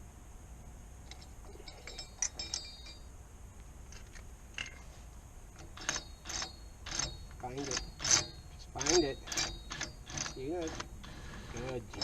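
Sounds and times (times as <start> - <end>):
low steady hum: 0.0 - 12.0
metal tools clinking: 1.1 - 3.1, 5.6 - 12.0.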